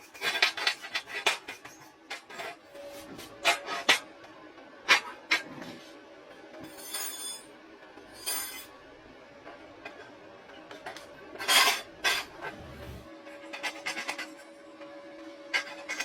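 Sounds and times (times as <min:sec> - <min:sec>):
metal scraping: 0:11.6 - 0:13.1.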